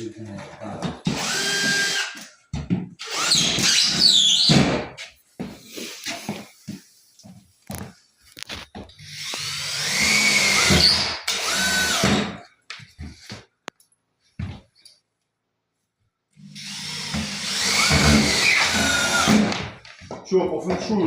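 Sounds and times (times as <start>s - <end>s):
power drill driving screws: 1.1s - 2.3s, 3.0s - 4.8s, 9.0s - 12.4s, 16.5s - 19.7s.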